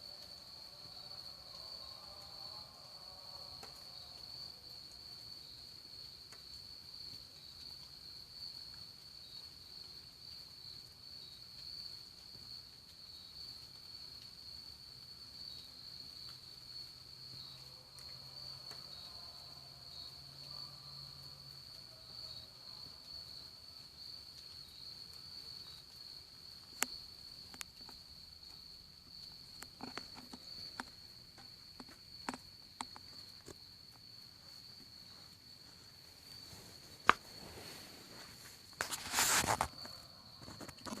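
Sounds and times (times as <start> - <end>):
crickets trilling: 0.0 - 41.0
rustling: 29.4 - 41.0.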